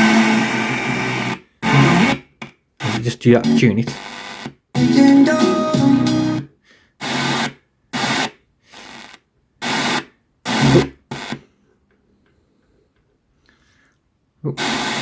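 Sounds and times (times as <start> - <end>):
radio music from small speaker: 0.0 - 2.2, 2.8 - 4.4, 9.7 - 11.4, 14.6 - 15.0.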